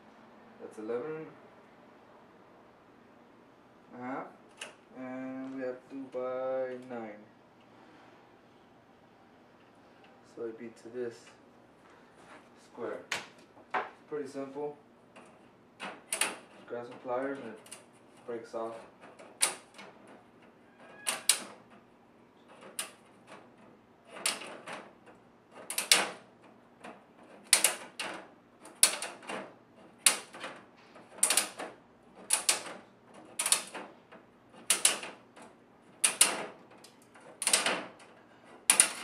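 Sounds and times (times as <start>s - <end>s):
plastic grid snapping: 25.6s - 33.9s, 34.6s - 39.0s.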